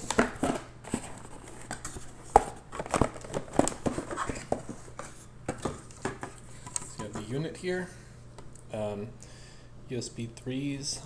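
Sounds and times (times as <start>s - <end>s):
packaging crinkling and rustling: 0.0s - 7.3s.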